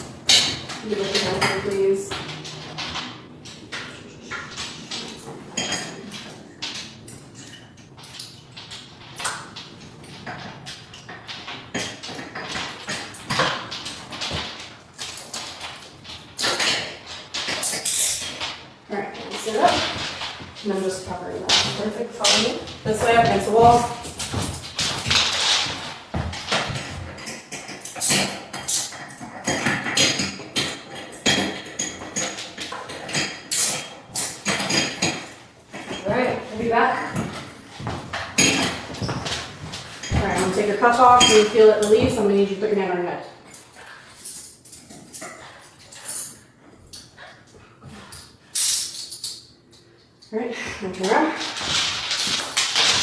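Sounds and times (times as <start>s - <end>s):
rustling of people moving: 0.0s - 53.0s
metal chains clinking: 9.8s - 42.4s, 43.5s - 46.4s
shuffling movement: 18.9s - 27.2s, 35.9s - 42.7s.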